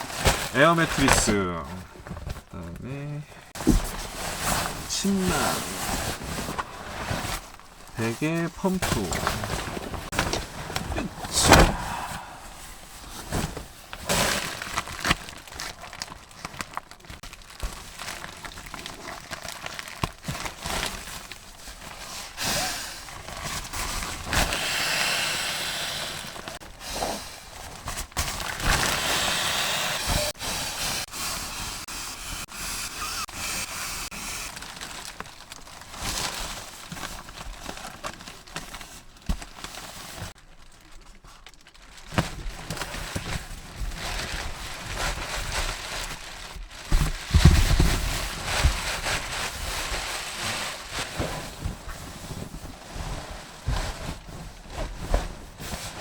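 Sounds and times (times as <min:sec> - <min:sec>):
bedding and gear rustling: 0:00.0 - 0:15.2.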